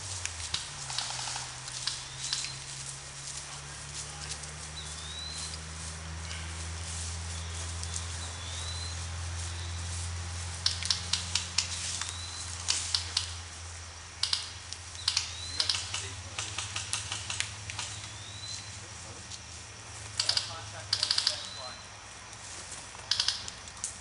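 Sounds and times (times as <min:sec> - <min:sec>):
steady low hum: 0:00.0 - 0:24.0
airsoft guns firing clicks: 0:00.5 - 0:02.6, 0:10.6 - 0:13.4, 0:14.2 - 0:18.2, 0:20.0 - 0:21.6, 0:23.0 - 0:24.0.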